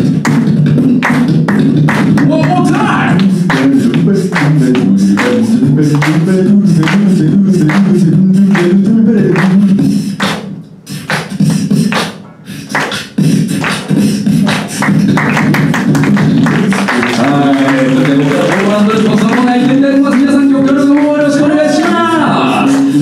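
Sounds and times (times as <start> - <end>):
beatbox vocal percussion: 0.0 - 23.0
group singing in chords: 3.2 - 10.4, 16.3 - 23.0.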